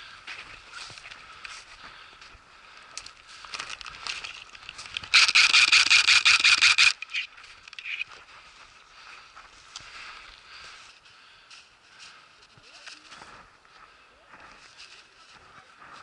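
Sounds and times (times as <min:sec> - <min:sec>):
airsoft rifle full-auto burst: 0:05.1 - 0:07.2.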